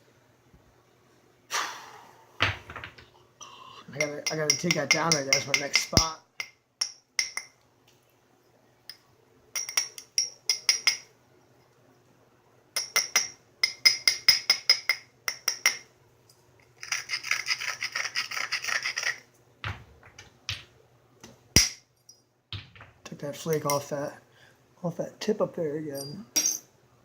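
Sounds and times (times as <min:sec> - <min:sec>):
stone clinking on stone: 0:04.0 - 0:07.6, 0:09.6 - 0:11.1, 0:12.8 - 0:17.1, 0:26.0 - 0:26.7.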